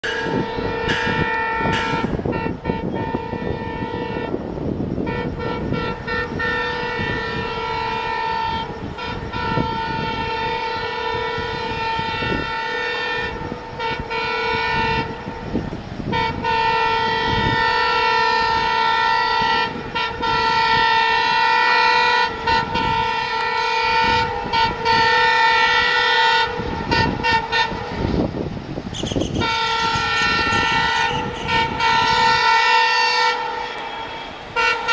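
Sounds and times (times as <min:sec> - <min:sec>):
locomotive horn blaring: 0:00.0 - 0:34.9
train rumble: 0:00.0 - 0:34.9.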